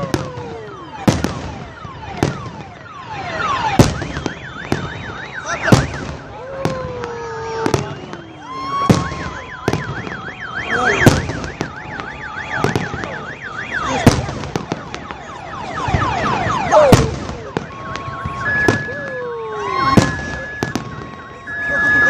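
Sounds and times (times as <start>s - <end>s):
car alarm: 0.0s - 22.0s
fireworks bangs: 0.0s - 22.0s
falling firework whistles: 3.6s - 13.2s, 16.9s - 22.0s.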